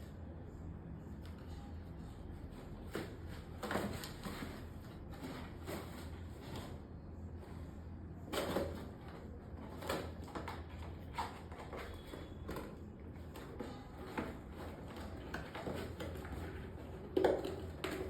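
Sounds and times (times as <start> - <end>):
steady low hum: 0.0 - 10.2.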